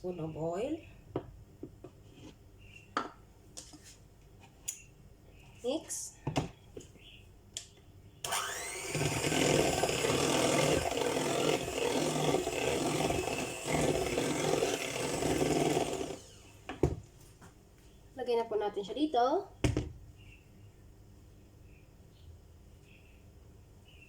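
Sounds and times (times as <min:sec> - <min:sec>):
electric hand mixer whining: 0:08.3 - 0:16.8.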